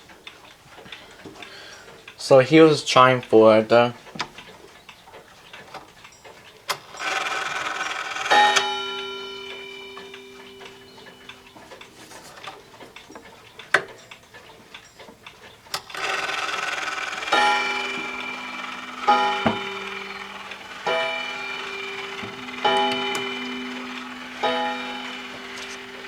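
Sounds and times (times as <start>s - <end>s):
clock clicks: 0.0s - 26.0s
clock striking train whirring: 5.7s - 26.0s
clock gong ringing: 6.7s - 13.2s, 15.9s - 26.0s.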